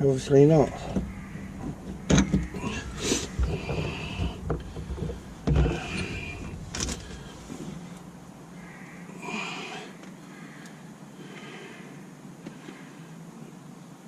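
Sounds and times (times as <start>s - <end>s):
scraping and rustling: 0.6s - 8.1s
gear knob knocking: 0.9s - 7.2s.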